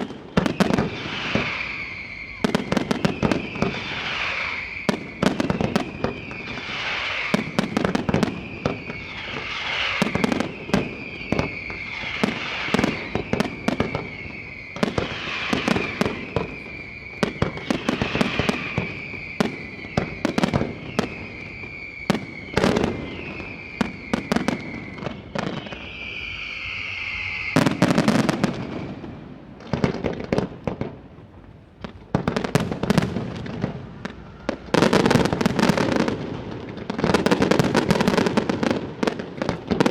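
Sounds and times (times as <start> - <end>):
firework whistle falling in pitch: 0.0 - 29.3
firework bangs: 0.0 - 39.9.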